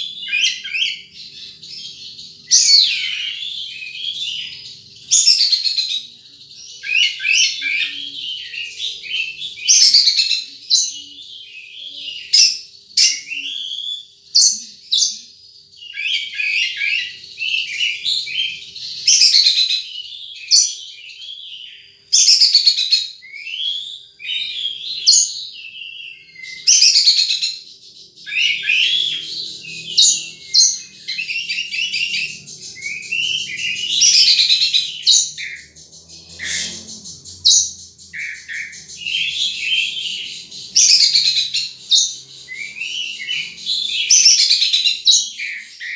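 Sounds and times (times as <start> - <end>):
sunbird singing: 0.0 - 45.9.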